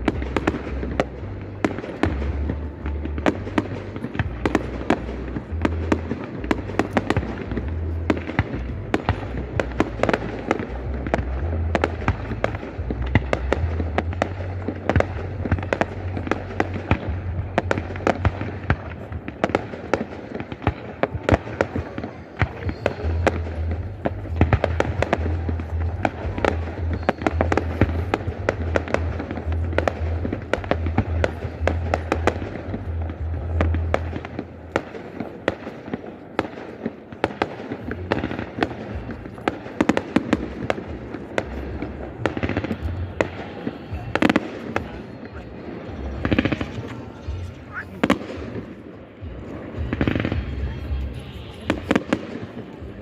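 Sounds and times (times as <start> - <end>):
music playing: 0.0 - 20.6, 37.9 - 53.0
fireworks bangs and crackles: 0.0 - 53.0.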